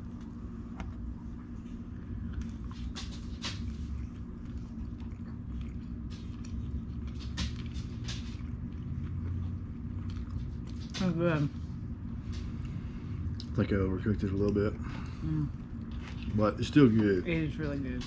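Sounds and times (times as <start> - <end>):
person chewing: 0.0 - 11.0, 14.3 - 17.2
steady low hum: 0.0 - 18.0.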